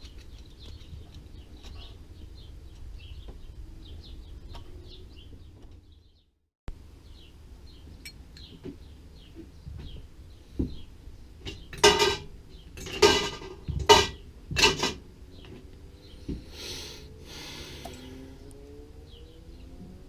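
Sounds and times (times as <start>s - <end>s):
metal parts clattering: 11.8s - 15.0s.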